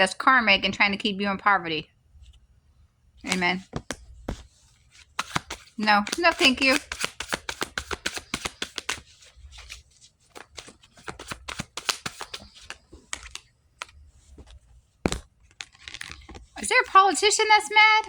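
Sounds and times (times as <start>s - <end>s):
deck of cards being shuffled: 3.2s - 17.4s.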